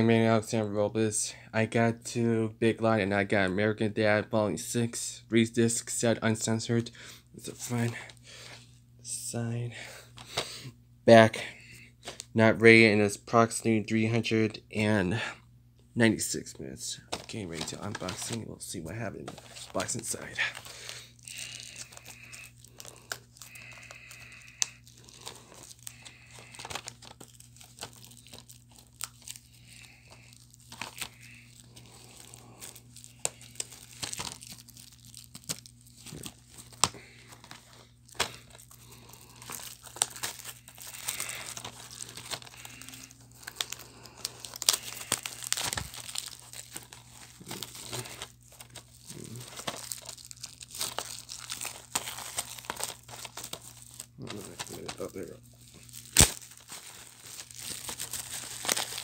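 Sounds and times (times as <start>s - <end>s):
plastic wrapping crinkling and tearing: 17.0s - 59.0s.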